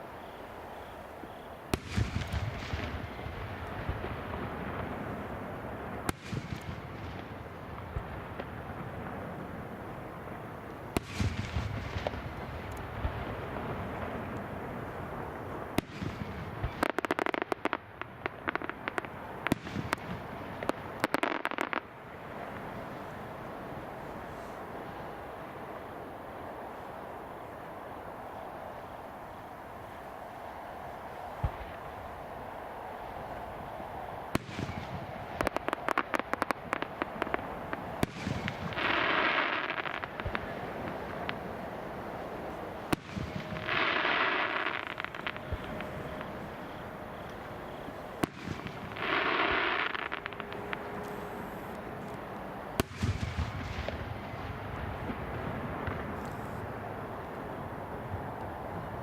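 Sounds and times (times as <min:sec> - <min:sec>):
fireworks crackling: 0:00.0 - 0:59.0
sharp firework crack: 0:01.8 - 0:09.8, 0:10.9 - 0:14.6, 0:34.4 - 0:51.9, 0:52.8 - 0:56.8
hissing noise: 0:39.1 - 0:52.8.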